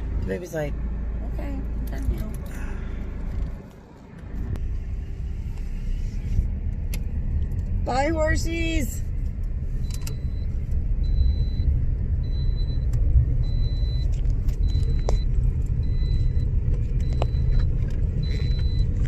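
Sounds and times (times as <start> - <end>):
car engine rumble: 0.0 - 19.0
seatbelt reminder beeping: 9.8 - 19.0.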